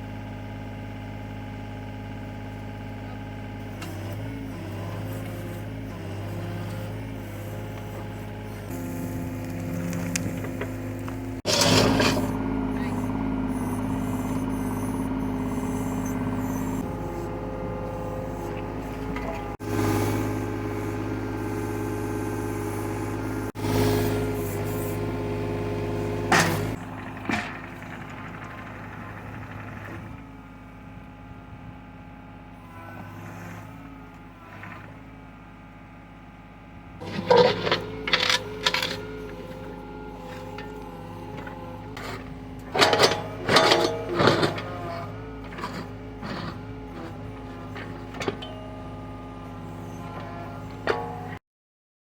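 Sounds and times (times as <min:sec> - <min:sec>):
excavator diesel engine running: 0:00.0 - 0:51.4
metal clanks and scrapes: 0:03.8 - 0:25.1, 0:26.2 - 0:30.2, 0:34.5 - 0:35.0, 0:37.0 - 0:51.4.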